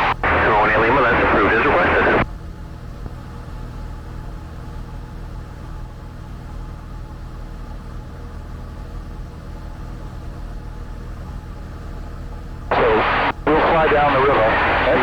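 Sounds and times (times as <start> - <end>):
airplane engine droning in cabin: 0.0 - 2.3, 12.7 - 15.0.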